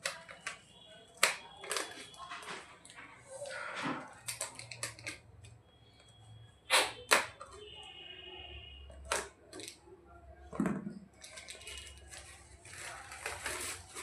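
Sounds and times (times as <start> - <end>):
packaging snapping: 0.0 - 3.0, 4.1 - 5.6, 11.2 - 14.0
wrapping rustling: 11.2 - 14.0.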